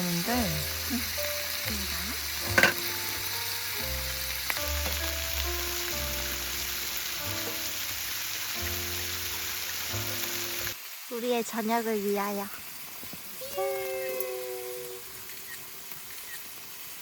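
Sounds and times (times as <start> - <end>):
soft background music: 0.0 - 10.8
food sizzling in a hot pan: 0.0 - 17.0.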